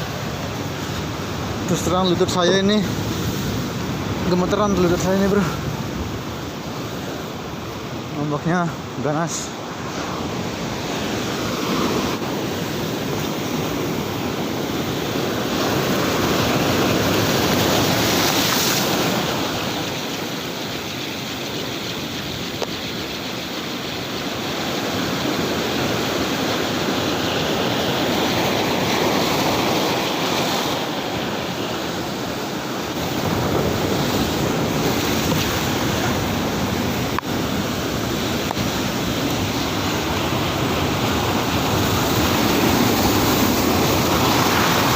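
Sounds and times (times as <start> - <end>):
heavy surf breaking: 0.0 - 44.9
wind on microphone: 24.9 - 44.9.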